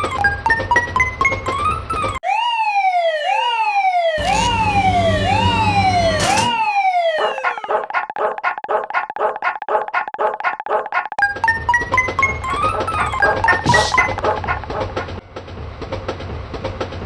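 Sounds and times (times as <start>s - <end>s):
synthesized siren wail: 2.2s - 7.8s
fast electronic beep: 12.2s - 14.2s.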